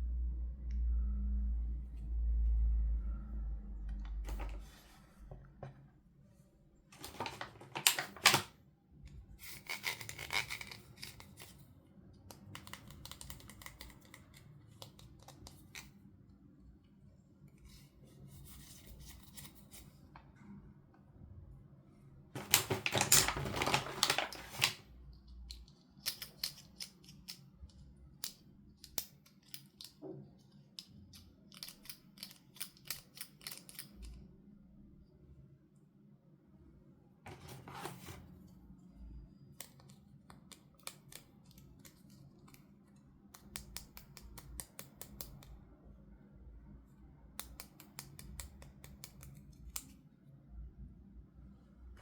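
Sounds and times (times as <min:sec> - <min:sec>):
plastic and cardboard rustling: 0:07.0 - 0:08.5, 0:22.4 - 0:24.9, 0:37.3 - 0:38.4.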